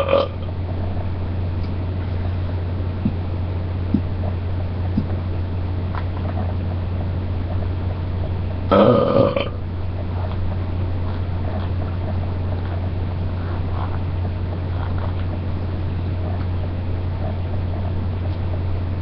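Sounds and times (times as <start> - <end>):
loud burp: 0.0 - 0.4, 8.7 - 9.6
steady low hum: 0.0 - 19.0.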